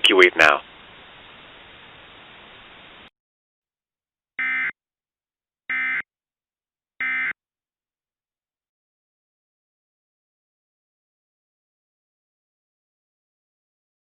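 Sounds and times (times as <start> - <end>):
low hiss: 0.0 - 3.1.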